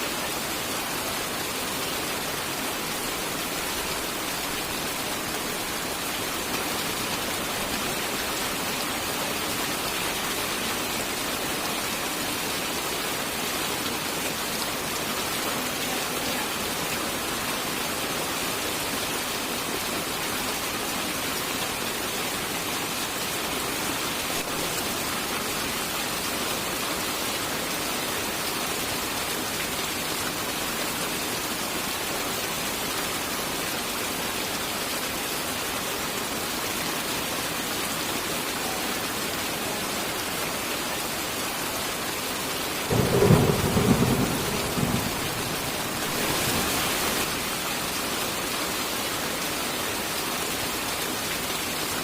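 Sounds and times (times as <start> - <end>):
heavy rain hissing: 0.0 - 52.0
thunder rumbling: 42.9 - 47.3.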